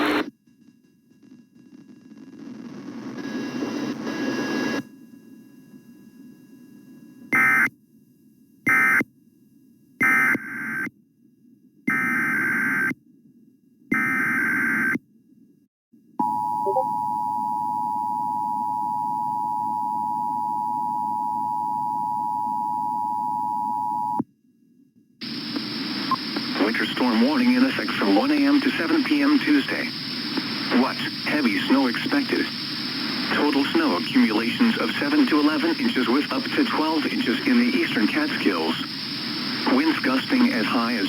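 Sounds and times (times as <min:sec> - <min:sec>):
two-tone attention signal: 0:16.3 - 0:17.2
faint low hiss: 0:25.2 - 0:41.0.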